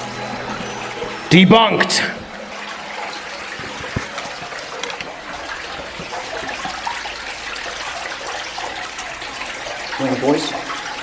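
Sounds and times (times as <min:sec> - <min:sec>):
water rushing: 0:00.0 - 0:11.0
small splashes and clicks: 0:02.2 - 0:11.0.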